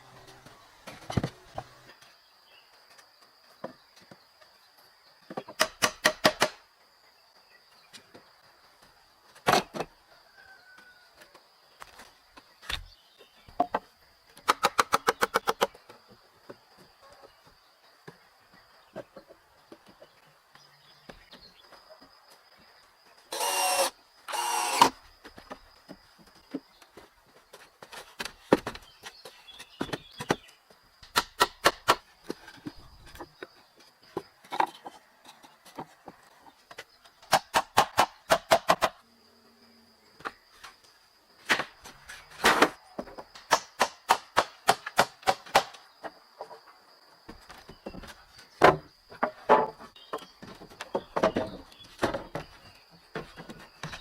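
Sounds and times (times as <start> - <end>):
rasping bursts: 23.3 - 25.0.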